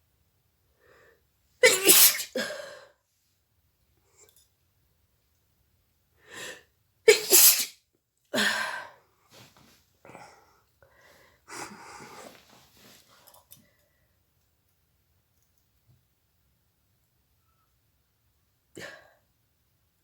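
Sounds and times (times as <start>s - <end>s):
woman sneezing: 1.6s - 2.7s, 7.1s - 7.7s.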